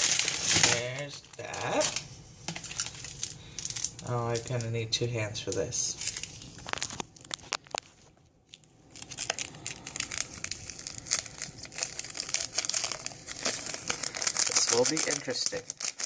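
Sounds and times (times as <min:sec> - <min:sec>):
plastic packet crinkling and tearing: 0:00.0 - 0:04.7, 0:05.4 - 0:16.0.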